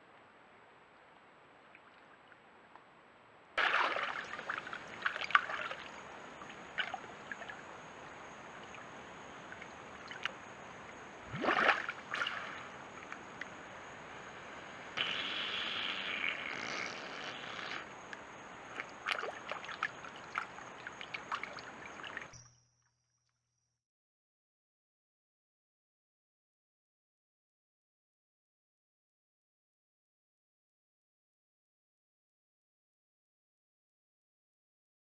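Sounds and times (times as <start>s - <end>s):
water sloshing and gurgling: 3.6s - 22.4s
water splashes: 3.6s - 22.4s.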